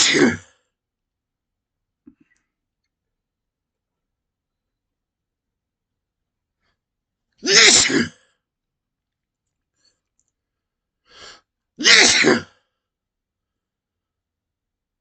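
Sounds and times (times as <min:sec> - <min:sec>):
man sneezing: 0:00.0 - 0:00.5, 0:07.4 - 0:08.2, 0:11.8 - 0:12.6.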